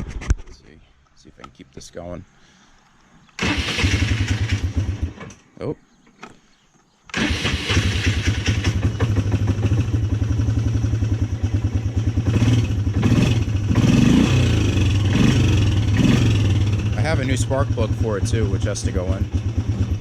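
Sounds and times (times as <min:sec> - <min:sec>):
atv engine running and revving: 0:07.7 - 0:20.0.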